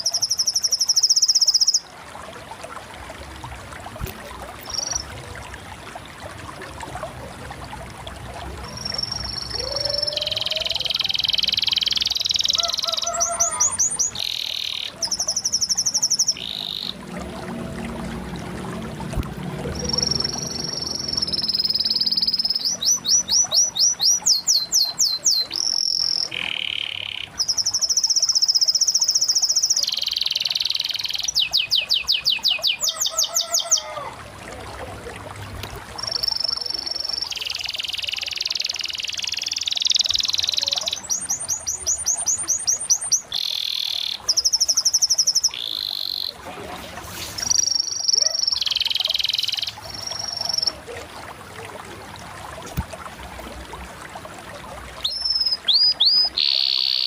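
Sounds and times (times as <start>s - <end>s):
canary singing: 8.7s - 17.0s, 19.7s - 34.0s, 36.0s - 46.4s, 47.5s - 50.8s, 55.0s - 57.0s.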